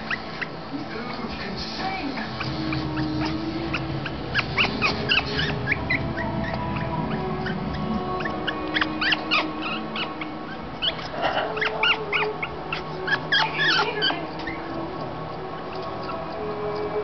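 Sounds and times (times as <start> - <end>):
parrot squeaky chirps: 0.0 - 17.0.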